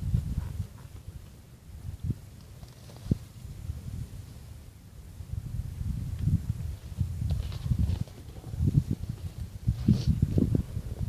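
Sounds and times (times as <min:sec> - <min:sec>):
wind buffeting microphone: 0:00.0 - 0:02.4, 0:05.0 - 0:11.0.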